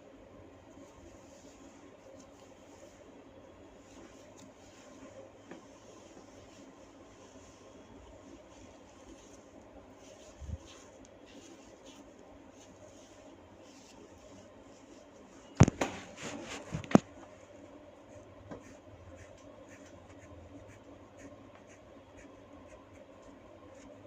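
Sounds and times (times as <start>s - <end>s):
hands rubbing through hair: 8.3s - 17.0s.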